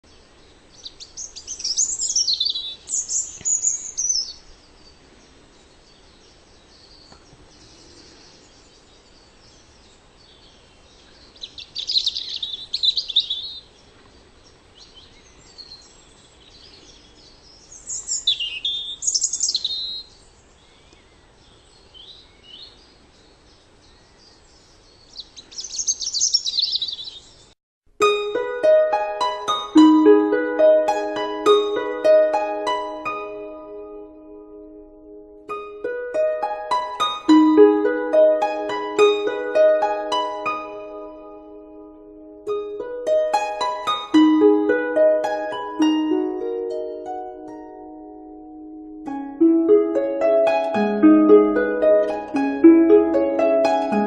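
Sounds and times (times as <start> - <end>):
robin singing: 0.0 - 54.0
harp music: 28.0 - 54.0.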